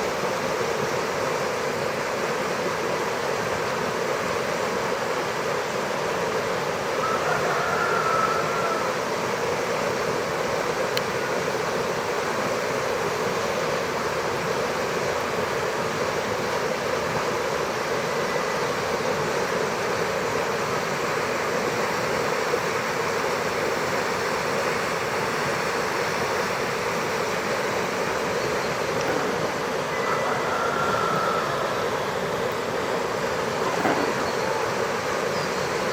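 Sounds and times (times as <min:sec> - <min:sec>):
stream water rushing: 0:00.0 - 0:35.9.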